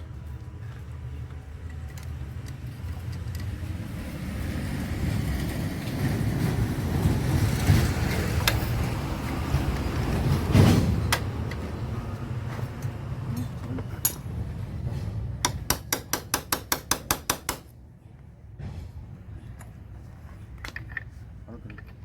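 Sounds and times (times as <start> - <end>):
metal tools knocking on metal: 13.3 - 14.4
sharp metallic taps: 15.4 - 17.7.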